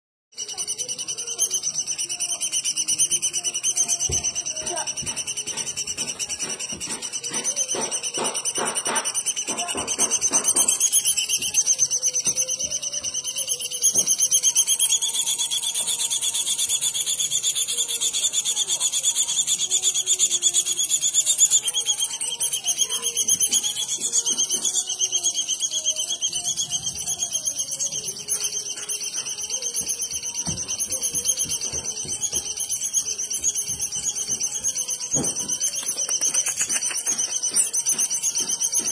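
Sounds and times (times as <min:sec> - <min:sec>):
bird trilling: 0:00.3 - 0:38.9
quick ticks: 0:35.8 - 0:38.2.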